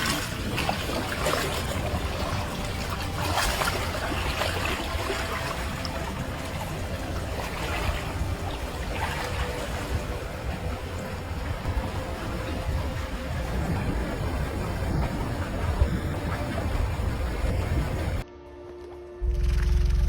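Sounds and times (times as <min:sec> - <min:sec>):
steady low rumble: 0:00.0 - 0:18.2
water splashing and trickling: 0:00.0 - 0:18.2.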